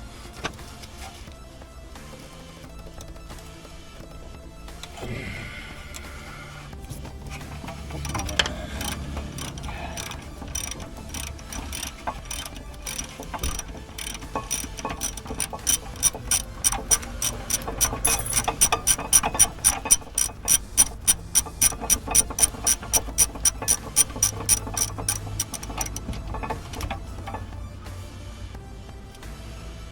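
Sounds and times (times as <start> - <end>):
ratchet wrench clicking: 7.0 - 27.5.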